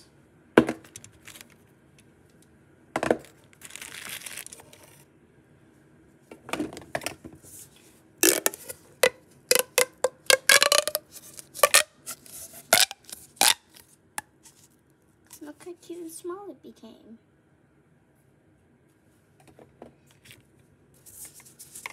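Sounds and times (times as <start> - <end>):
packaging rustle: 1.0 - 1.6, 3.2 - 5.0.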